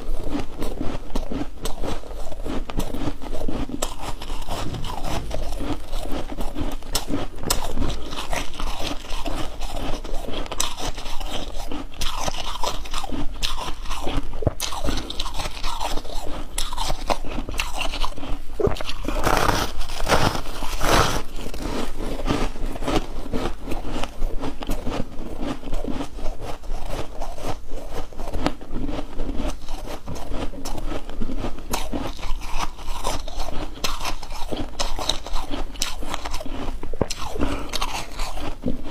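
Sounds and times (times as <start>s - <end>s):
person chewing ice: 0.0s - 38.9s.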